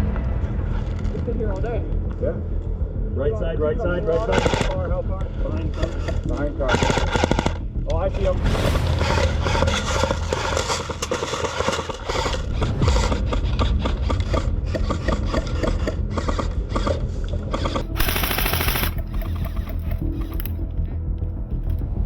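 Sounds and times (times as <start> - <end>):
airsoft gun firing full-auto: 17.8 - 20.5.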